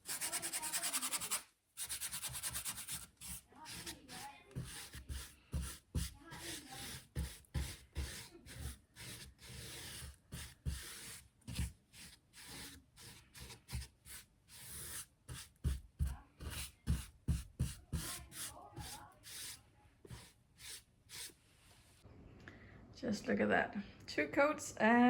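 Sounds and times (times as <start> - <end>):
hand rubbing over wood: 16.4 - 22.0.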